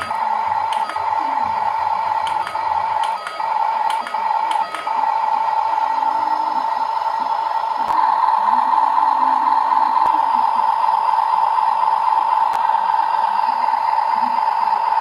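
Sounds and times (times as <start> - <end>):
short clicks: 2.2 - 5.0.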